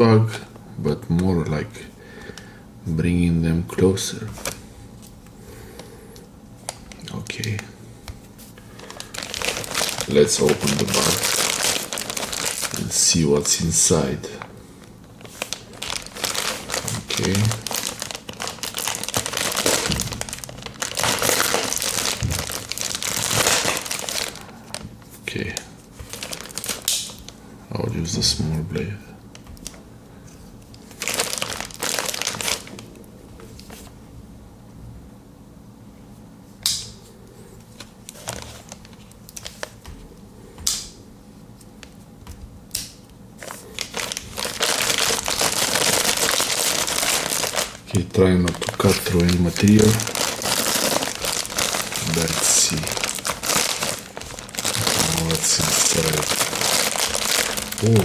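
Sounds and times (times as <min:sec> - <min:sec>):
mailing bag rustling: 0:08.3 - 0:14.1, 0:14.8 - 0:27.4, 0:30.8 - 0:32.9, 0:37.7 - 0:39.9, 0:43.4 - 0:58.0.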